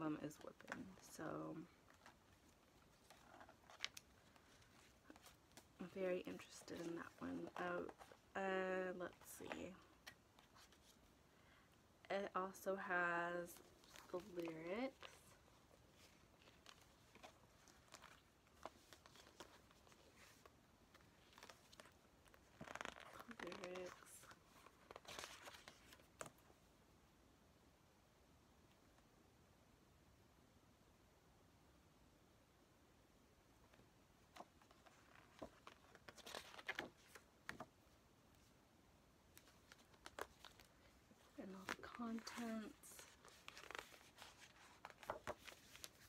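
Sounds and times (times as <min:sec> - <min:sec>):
paper rustling: 0:01.7 - 0:08.3, 0:13.5 - 0:26.4, 0:34.3 - 0:37.8, 0:39.3 - 0:46.0
paper and plastic packaging rustling: 0:39.4 - 0:46.0.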